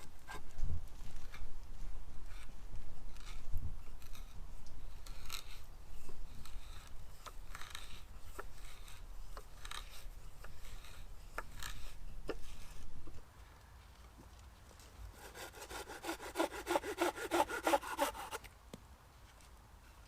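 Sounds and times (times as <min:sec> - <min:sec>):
blade clicking on wood: 0:03.1 - 0:13.0
draw knife scraping bark: 0:03.1 - 0:13.0, 0:15.2 - 0:18.5.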